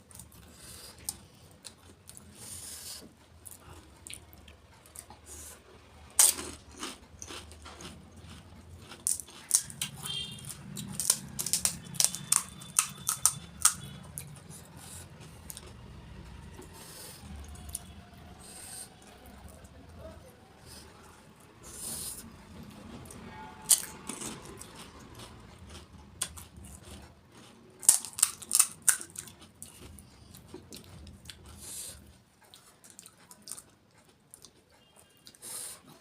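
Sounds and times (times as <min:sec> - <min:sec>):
wet chewing: 0:00.1 - 0:05.5, 0:06.2 - 0:19.9, 0:23.0 - 0:36.0
crisp shells crunching: 0:27.8 - 0:29.3.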